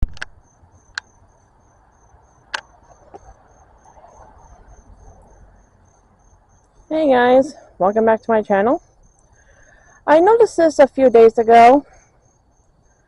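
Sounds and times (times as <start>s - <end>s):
sharp clicks: 0.0s - 0.3s, 0.9s - 1.1s
cricket chirping: 0.0s - 13.0s.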